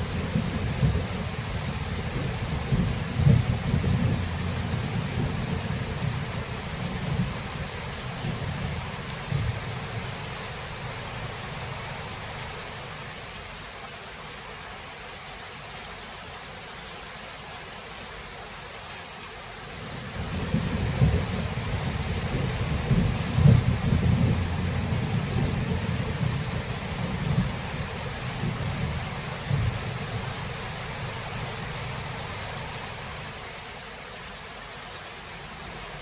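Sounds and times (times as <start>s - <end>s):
rain hiss: 0.0s - 36.0s
rolling thunder: 0.1s - 7.6s, 20.2s - 30.3s.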